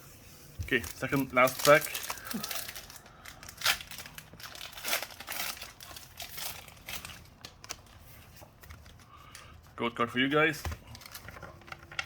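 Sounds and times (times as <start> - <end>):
foil wrapper crinkling: 0.7 - 8.0.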